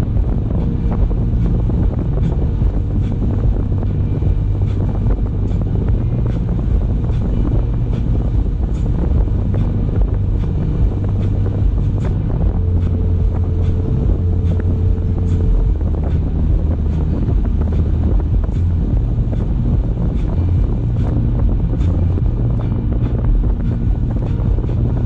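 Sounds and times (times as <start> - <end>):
road rumble: 0.0 - 25.0
road surface ticks: 0.0 - 25.0
wind buffeting microphone: 0.0 - 25.0.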